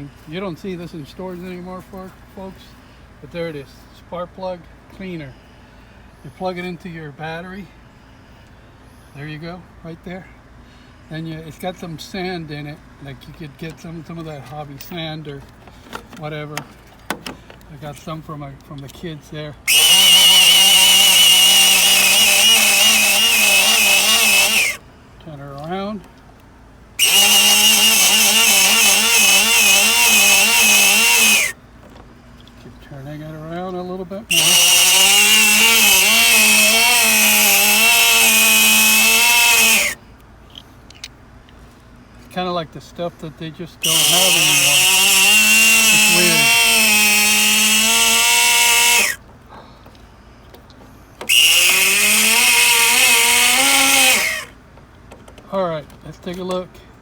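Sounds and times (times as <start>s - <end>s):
small electric motor whining: 19.7s - 24.8s, 27.0s - 31.6s, 34.3s - 40.0s, 43.8s - 49.2s, 51.3s - 54.6s
motor whine with hiss: 43.8s - 49.2s.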